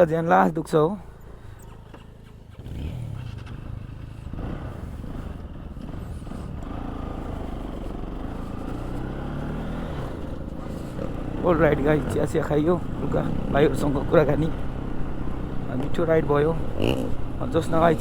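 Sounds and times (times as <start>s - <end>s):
motorcycle engine accelerating: 1.2s - 18.0s.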